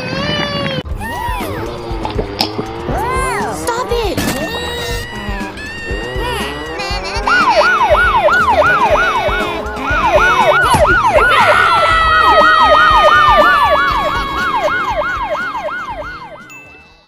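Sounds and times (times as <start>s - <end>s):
siren yelping: 4.3s - 16.5s.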